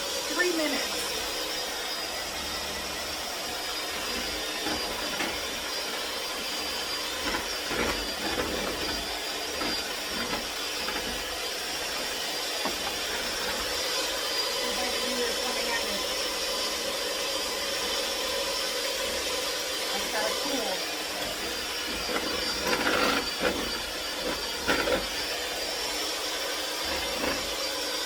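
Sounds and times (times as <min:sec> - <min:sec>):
electric mixer running: 0:00.0 - 0:28.0.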